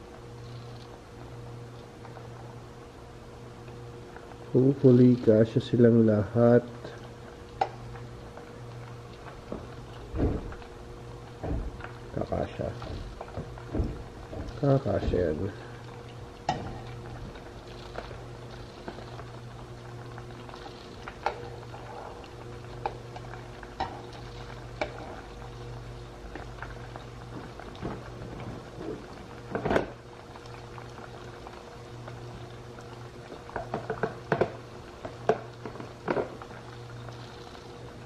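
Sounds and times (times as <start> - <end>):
low steady hum: 0.0 - 38.0
oil bubbling while frying: 0.0 - 38.0
sharp clicks and knocks: 12.8 - 14.6.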